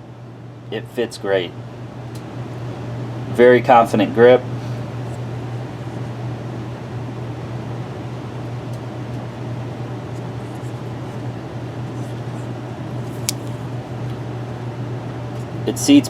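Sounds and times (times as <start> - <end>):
room noise hum and hiss: 0.0 - 16.0
sharp click: 13.1 - 13.6.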